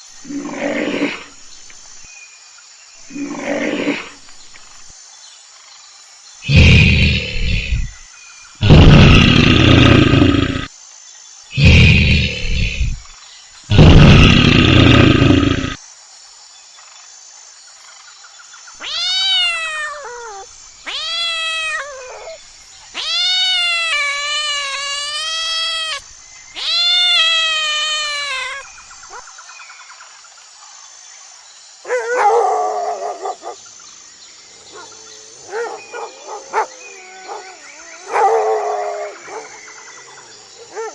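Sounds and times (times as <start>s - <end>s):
animal roaring and calling: 0.2s - 1.4s, 3.1s - 4.2s, 6.5s - 8.0s, 8.6s - 10.7s, 11.6s - 13.0s, 13.7s - 15.8s, 34.6s - 40.9s.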